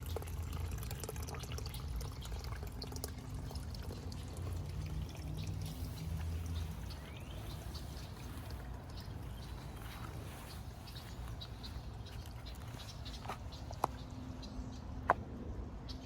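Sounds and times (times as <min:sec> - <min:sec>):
small splashes: 0:00.0 - 0:14.1
creek water trickling: 0:00.0 - 0:15.2.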